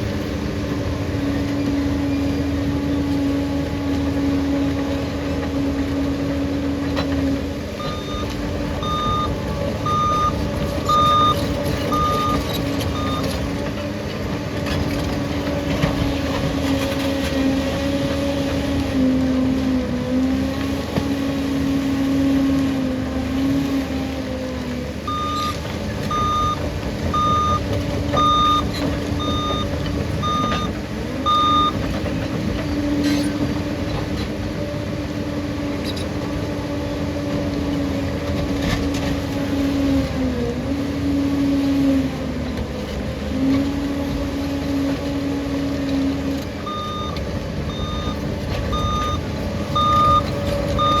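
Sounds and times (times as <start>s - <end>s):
diesel engine running: 0.0s - 51.0s
reversing alarm beeps: 7.8s - 13.5s, 25.1s - 31.8s, 46.6s - 51.0s.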